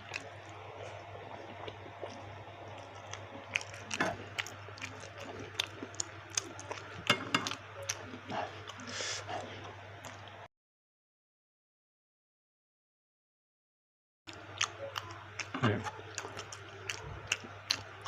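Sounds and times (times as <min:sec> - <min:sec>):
person chewing and biting: 0:00.0 - 0:10.4, 0:14.3 - 0:18.0
steady low hum: 0:00.0 - 0:10.5.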